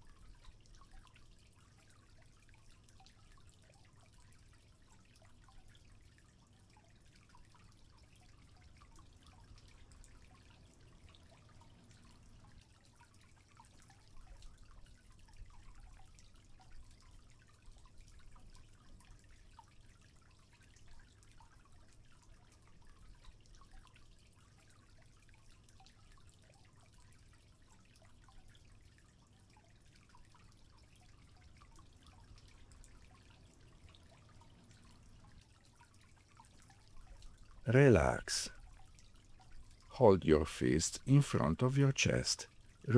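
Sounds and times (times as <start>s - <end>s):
faint trickling water: 0.0s - 42.9s.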